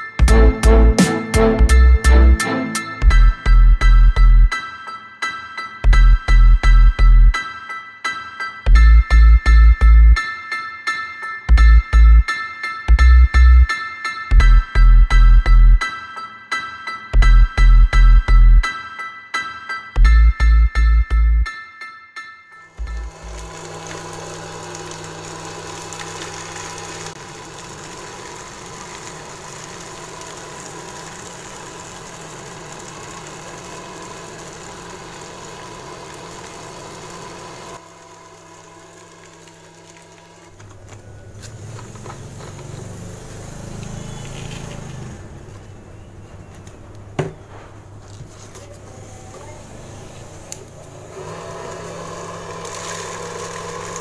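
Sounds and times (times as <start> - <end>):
small electric motor whirring: 22.8 - 40.6, 41.4 - 45.2, 48.9 - 54.0.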